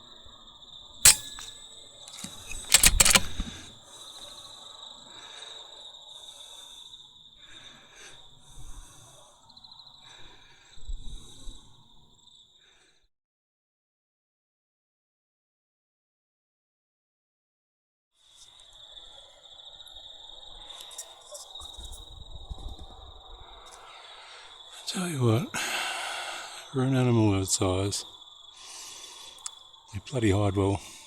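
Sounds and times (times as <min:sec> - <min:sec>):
crickets chirring: 0:00.0 - 0:12.8, 0:18.2 - 0:31.0
sharp click: 0:01.1 - 0:03.7
knocks and rustling of gear: 0:01.1 - 0:03.8.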